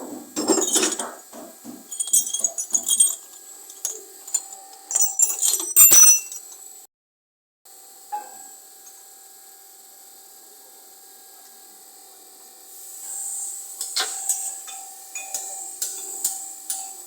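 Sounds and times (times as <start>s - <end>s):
hiss: 12.7s - 17.0s.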